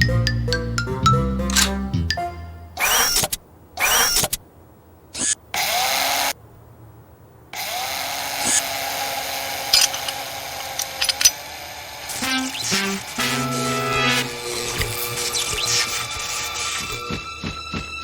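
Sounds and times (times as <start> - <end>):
mechanical clicks: 1.5 - 1.8
mechanical whirring: 2.8 - 4.4, 8.4 - 17.1.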